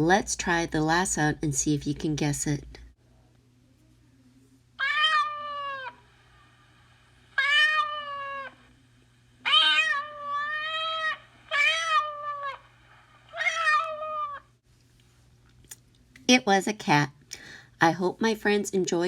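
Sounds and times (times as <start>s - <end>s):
cat meowing: 4.8s - 6.0s, 7.4s - 8.6s, 9.5s - 12.6s, 13.3s - 14.4s.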